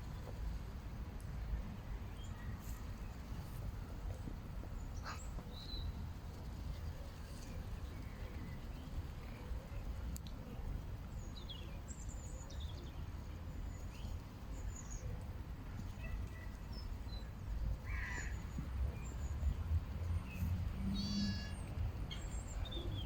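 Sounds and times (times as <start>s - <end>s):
faint high bird chirps: 20.9s - 23.0s.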